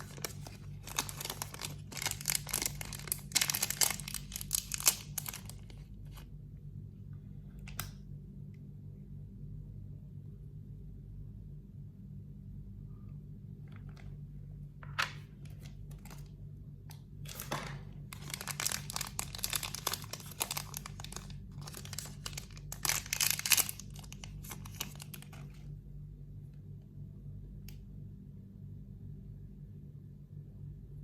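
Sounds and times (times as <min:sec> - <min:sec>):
packaging crinkling and tearing: 0:00.0 - 0:06.2, 0:15.3 - 0:16.4, 0:17.2 - 0:25.7
steady low hum: 0:00.0 - 0:31.0.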